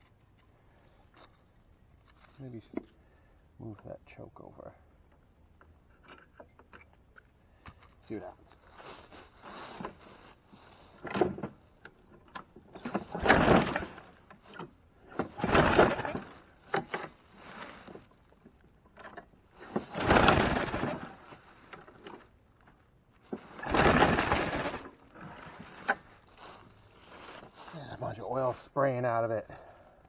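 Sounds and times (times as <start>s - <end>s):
mower engine cranking: 8.5s - 27.4s.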